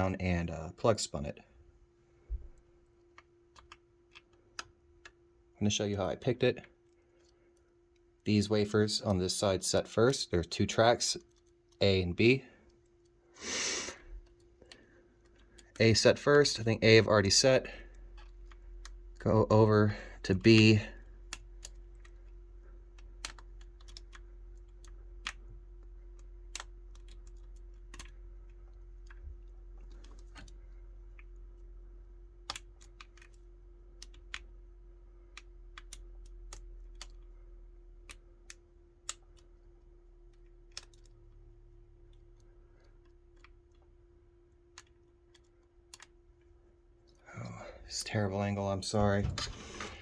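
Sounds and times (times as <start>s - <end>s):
faint hum: 0.0s - 50.0s.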